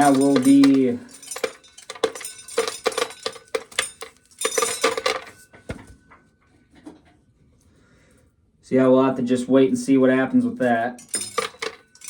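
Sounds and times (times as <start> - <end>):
corn kernels clattering: 0.0 - 5.4, 11.0 - 12.0.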